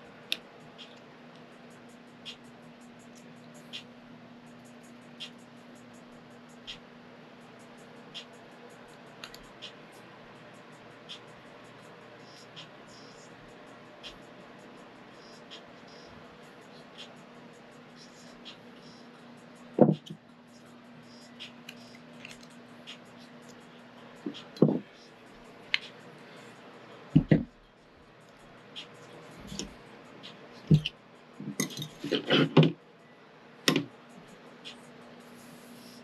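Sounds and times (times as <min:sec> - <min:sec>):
faint steady hum: 0:00.0 - 0:36.0
metal tools clanking: 0:31.5 - 0:32.7.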